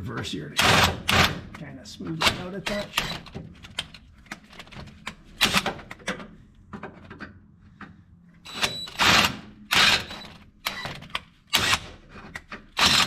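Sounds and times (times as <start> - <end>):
power drill running: 8.5 - 10.9, 12.8 - 13.0.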